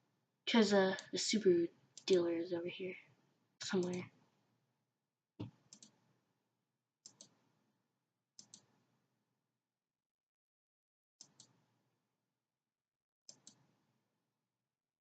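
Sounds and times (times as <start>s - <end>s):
computer mouse clicking: 2.0s - 2.2s, 3.7s - 4.1s, 5.4s - 6.0s, 7.0s - 7.4s, 8.4s - 8.8s, 11.2s - 11.6s, 13.3s - 13.7s.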